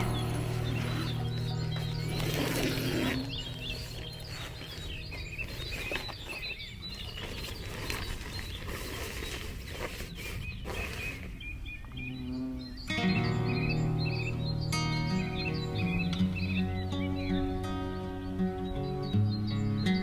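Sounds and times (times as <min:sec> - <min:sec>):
small birds chirping: 0:00.0 - 0:20.0.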